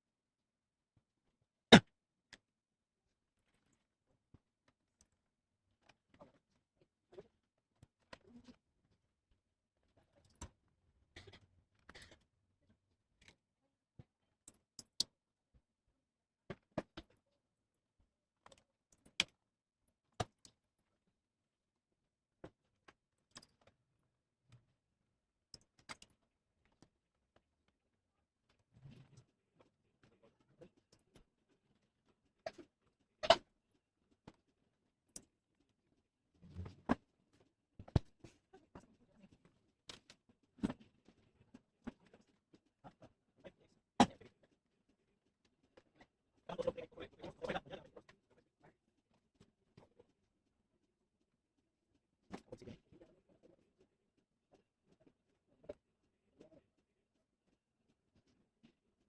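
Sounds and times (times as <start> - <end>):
small hard parts clicking and tapping: 13.2 - 15.7, 18.3 - 21.0, 22.4 - 24.8, 25.4 - 36.1.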